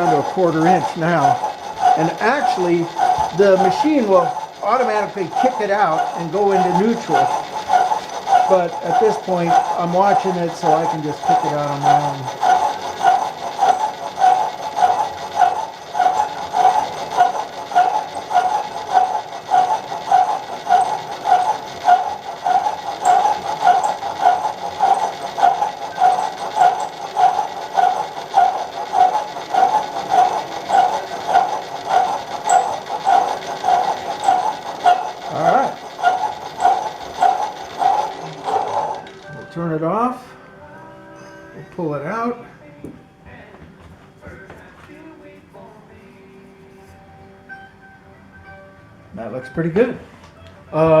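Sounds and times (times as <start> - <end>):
drill press pulsing whirr: 0.0 - 40.4.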